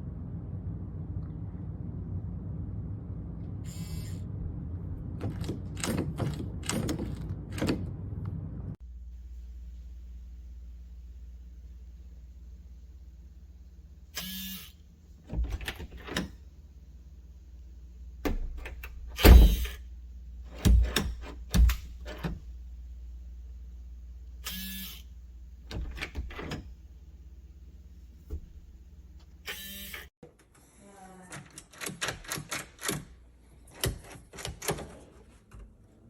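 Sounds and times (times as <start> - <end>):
door lock clicks and thumps: 5.2 - 7.9, 18.2 - 19.8, 20.6 - 22.4
lock motor whirring: 14.1 - 16.4, 18.2 - 19.9, 24.4 - 26.7, 29.2 - 30.1.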